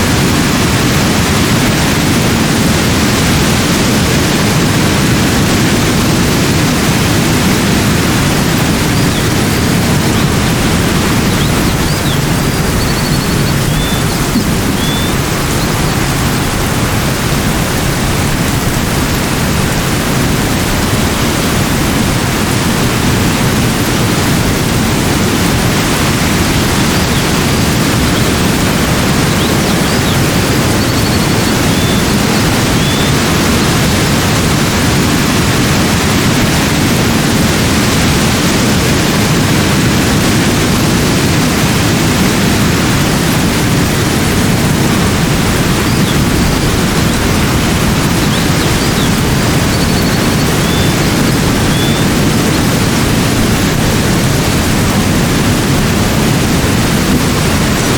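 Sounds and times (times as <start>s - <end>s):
faint high chirps: 8.4s - 16.3s, 29.0s - 33.3s, 45.8s - 52.1s.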